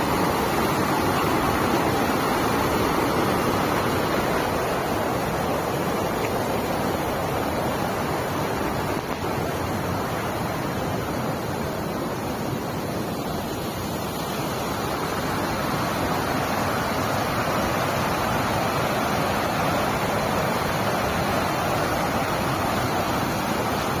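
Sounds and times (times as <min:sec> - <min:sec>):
waterfall rushing: 0:00.0 - 0:24.0.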